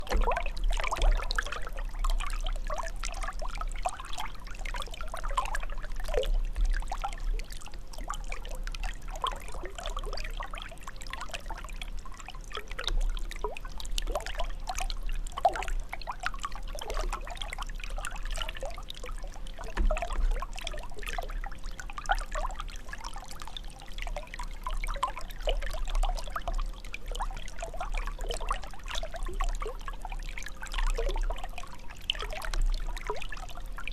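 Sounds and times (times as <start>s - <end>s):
water trickling and gurgling: 0.0s - 33.9s.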